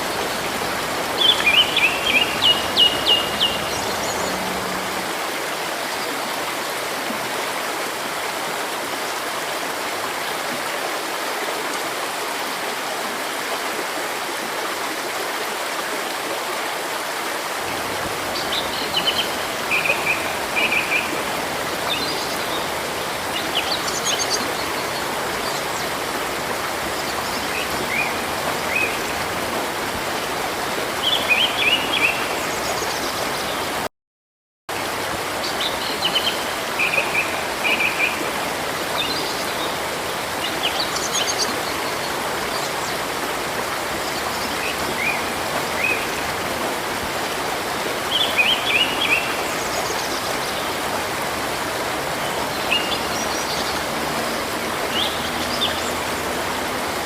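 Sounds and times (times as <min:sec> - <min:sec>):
river rushing: 0:00.0 - 0:33.9, 0:34.7 - 0:57.0.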